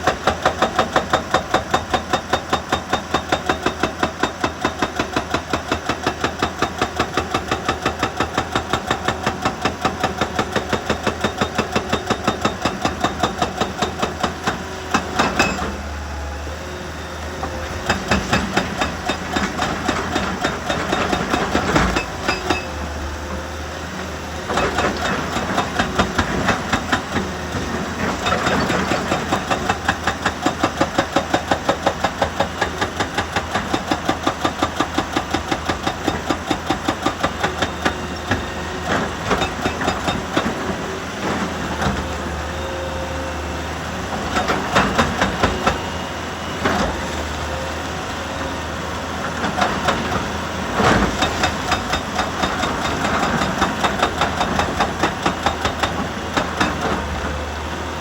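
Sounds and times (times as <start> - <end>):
heavy machinery pounding: 17.4 - 22.7, 49.4 - 57.4.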